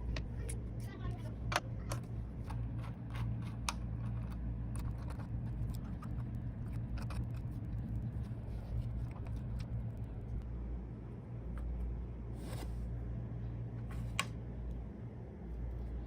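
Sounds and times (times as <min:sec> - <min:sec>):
steady low hum: 0:00.0 - 0:16.0
small hardware clicking and scraping: 0:01.5 - 0:07.9.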